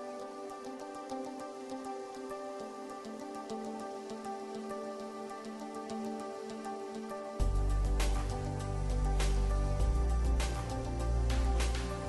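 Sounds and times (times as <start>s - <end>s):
gentle background music: 0.0s - 12.0s.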